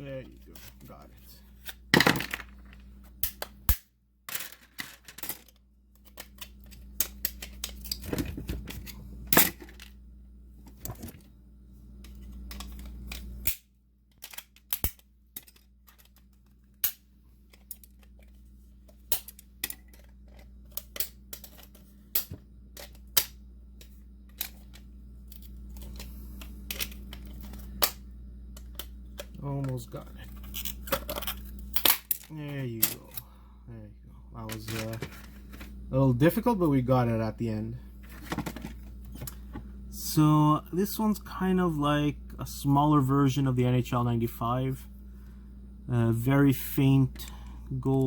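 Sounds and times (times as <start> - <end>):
low steady hum: 0.0 - 48.0.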